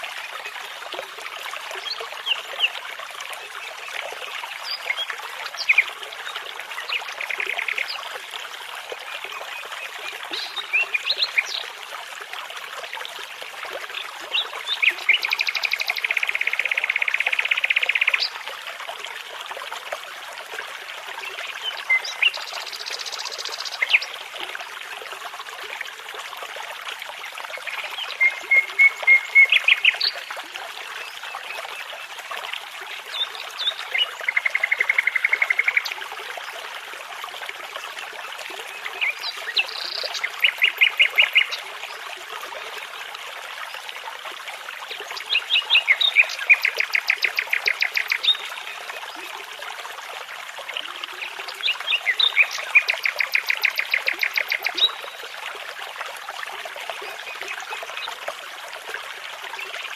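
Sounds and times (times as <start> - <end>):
babbling brook rushing: 0.0 - 59.9
songbirds singing: 45.1 - 48.8, 51.2 - 55.2.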